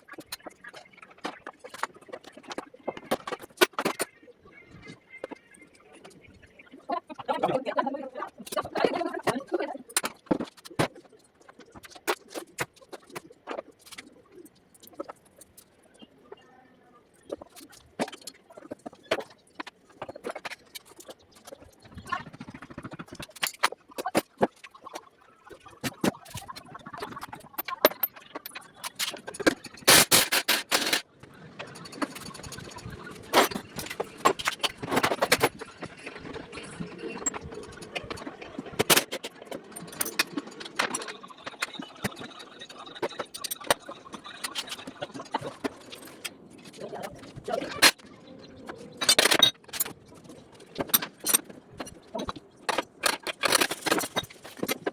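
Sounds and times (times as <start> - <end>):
hand tools and metal parts clinking: 25.8 - 31.0, 37.2 - 48.0, 48.7 - 54.9.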